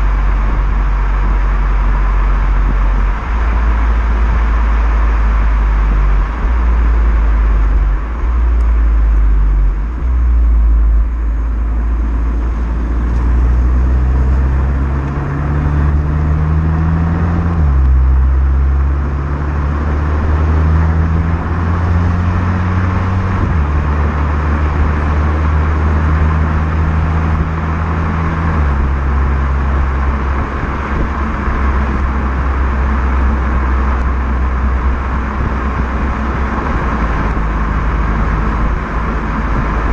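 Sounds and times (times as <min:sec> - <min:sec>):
car engine running: 0:00.0 - 0:39.9.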